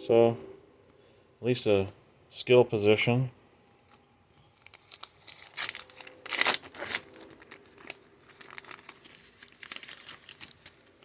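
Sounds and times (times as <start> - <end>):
foil wrapper tearing and crinkling: 4.5 - 11.0.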